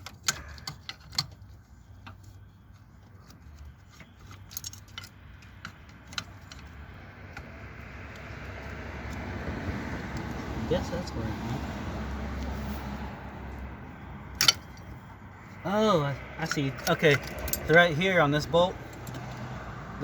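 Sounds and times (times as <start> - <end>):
metallic clicks of tools: 16.4 - 18.0, 18.8 - 19.5.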